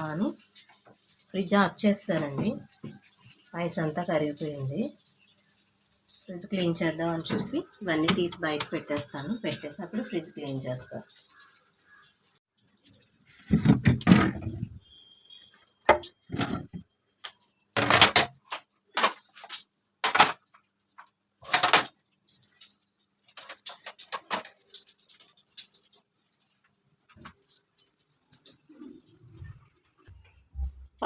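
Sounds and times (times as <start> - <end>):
containers clattering: 13.3 - 20.7.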